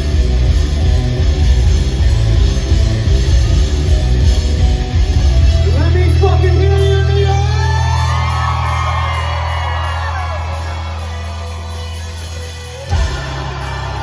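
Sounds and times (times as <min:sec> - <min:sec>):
rock band playing loud: 0:00.0 - 0:14.0.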